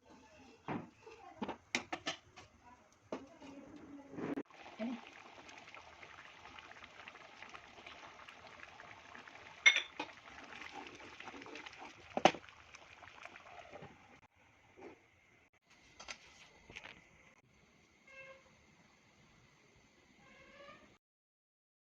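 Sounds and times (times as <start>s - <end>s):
faint steady hiss: 4.5s - 21.0s.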